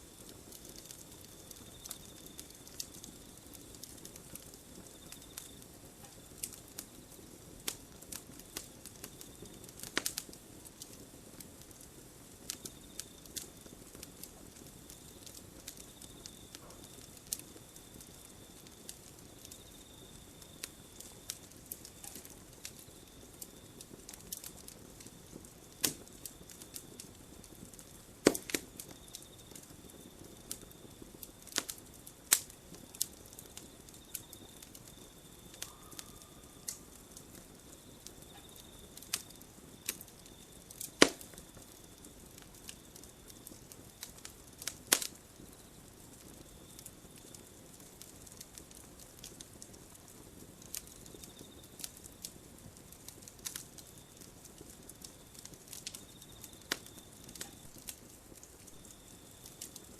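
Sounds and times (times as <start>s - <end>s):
campfire crackling: 0.0s - 59.9s.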